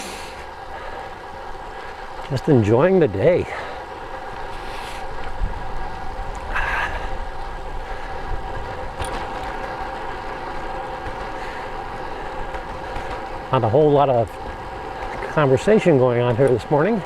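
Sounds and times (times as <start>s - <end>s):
bicycle road noise: 0.0s - 17.0s
wind rumbling on microphone: 3.9s - 15.5s.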